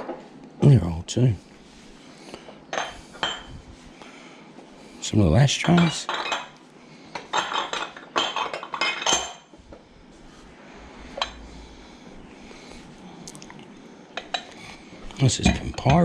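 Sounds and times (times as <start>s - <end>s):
glass and ceramic dishes clinking: 2.7s - 3.6s, 5.6s - 6.6s, 7.2s - 9.5s, 14.2s - 14.6s, 15.4s - 16.0s.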